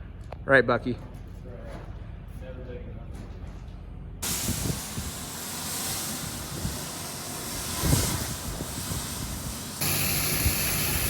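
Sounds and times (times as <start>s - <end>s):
steady hissing: 4.2s - 11.0s
machine hum with high whine: 9.8s - 11.0s.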